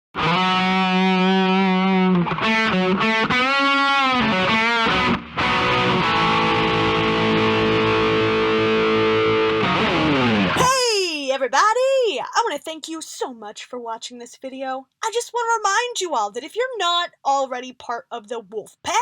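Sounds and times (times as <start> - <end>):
distorted electric guitar: 0.2 - 10.8.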